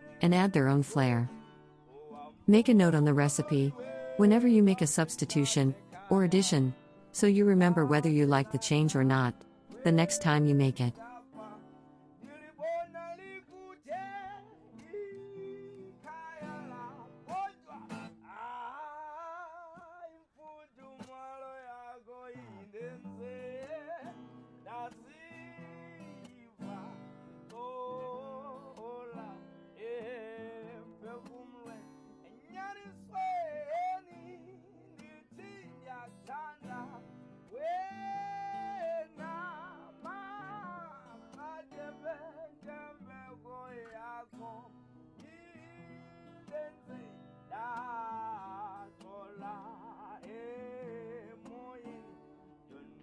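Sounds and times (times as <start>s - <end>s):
acoustic guitar: 0.0s - 53.0s
person singing: 2.0s - 11.0s.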